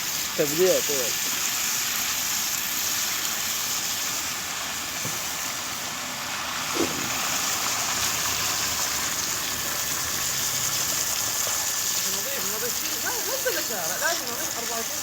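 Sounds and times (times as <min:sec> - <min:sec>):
water rushing: 0:06.3 - 0:15.0.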